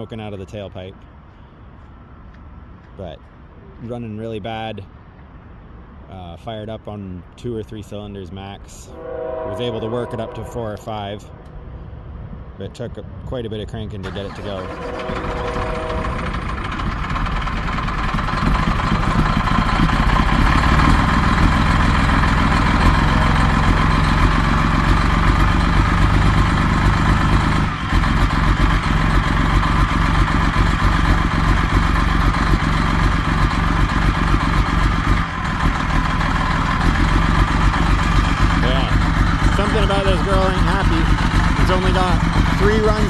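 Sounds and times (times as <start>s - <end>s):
diesel engine idling rough: 14.0s - 43.0s.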